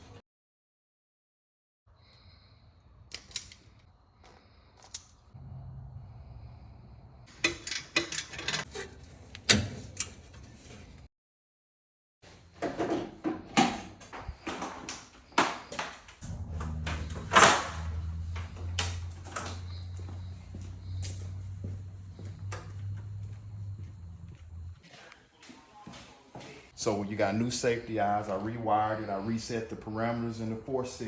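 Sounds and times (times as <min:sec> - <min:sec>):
garage door clanking and rattling: 0:16.2 - 0:20.0
garage door opener motor hum: 0:16.2 - 0:24.8.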